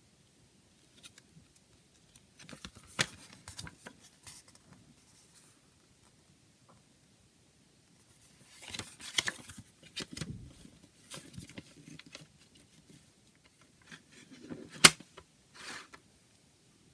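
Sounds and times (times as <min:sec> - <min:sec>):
cd case handling rustle: 0:02.0 - 0:04.6, 0:08.4 - 0:16.0.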